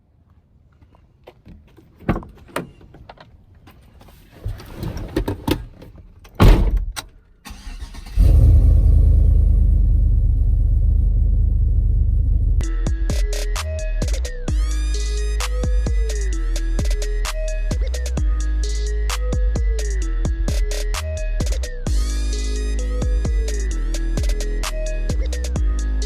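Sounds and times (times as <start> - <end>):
truck engine starting and idling: 6.4 - 12.7.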